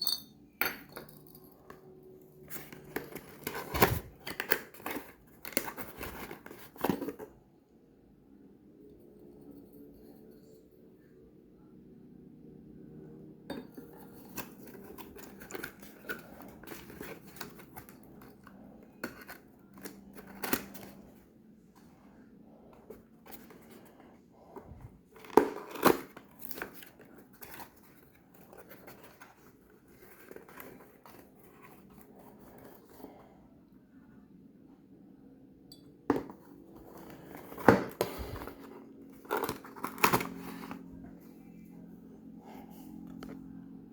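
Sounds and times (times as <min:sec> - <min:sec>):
packaging clicks scrapes and rustles: 0:02.4 - 0:07.3, 0:13.9 - 0:21.2, 0:22.6 - 0:33.2, 0:36.2 - 0:41.2.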